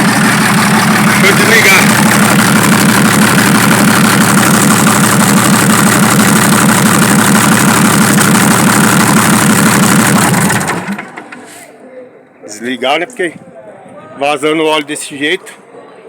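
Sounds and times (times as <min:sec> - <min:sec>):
diesel truck engine idling: 0:00.0 - 0:11.3.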